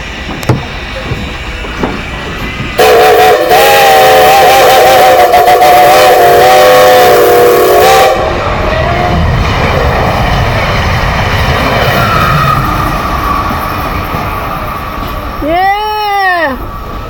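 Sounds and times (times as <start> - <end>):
train whistle chord: 2.8 - 9.2.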